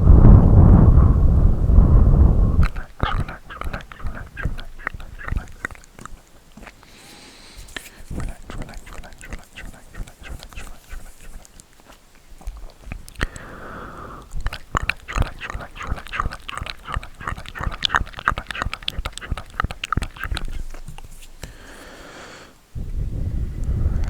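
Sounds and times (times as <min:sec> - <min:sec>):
hissy rubbing: 0:01.9 - 0:24.0
crackly clicks and taps: 0:02.6 - 0:07.0, 0:07.6 - 0:13.5, 0:14.2 - 0:21.6.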